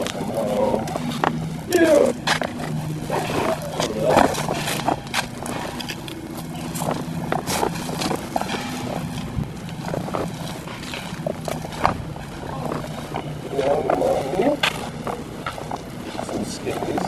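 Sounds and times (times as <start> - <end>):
motor humming: 0.0 - 17.0.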